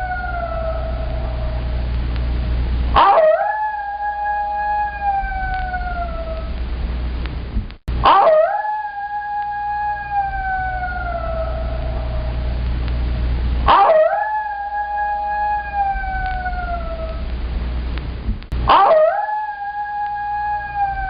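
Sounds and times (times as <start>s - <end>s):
coyote howling: 0.0s - 1.8s, 3.0s - 6.6s, 8.0s - 12.6s, 13.7s - 17.3s, 18.7s - 21.0s
low rumble: 0.0s - 8.1s, 8.7s - 18.7s, 19.3s - 21.0s.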